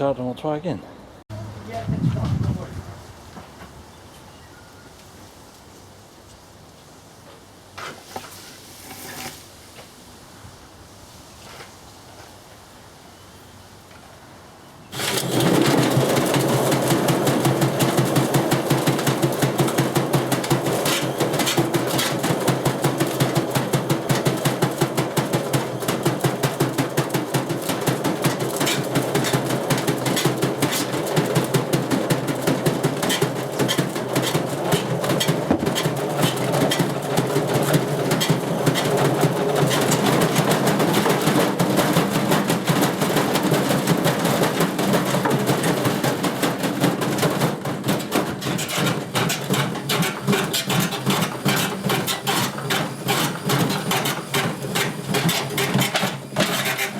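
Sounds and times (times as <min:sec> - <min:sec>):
washing machine knocking off balance: 0:15.0 - 0:56.9.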